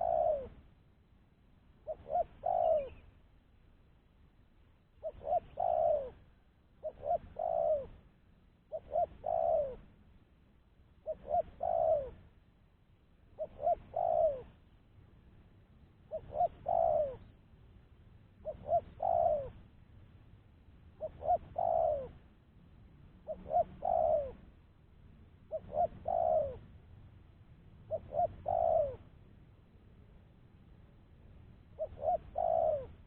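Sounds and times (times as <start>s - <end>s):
dove cooing: 0.0s - 0.7s, 1.8s - 3.1s, 5.0s - 8.1s, 8.7s - 9.9s, 11.0s - 12.3s, 13.4s - 14.6s, 16.1s - 17.4s, 18.4s - 19.7s, 21.0s - 22.3s, 23.2s - 24.6s, 25.5s - 26.6s, 27.9s - 29.1s, 31.8s - 33.0s.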